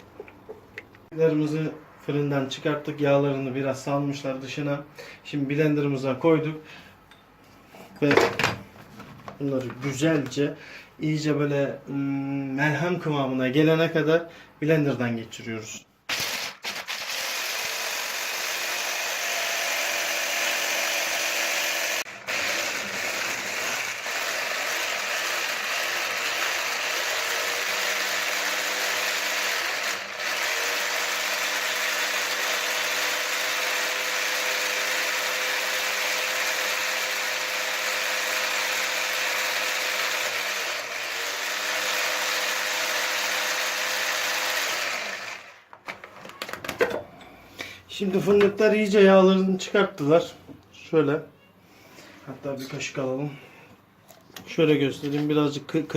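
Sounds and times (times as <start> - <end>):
blender motor grinding nuts: 16.1 - 46.0.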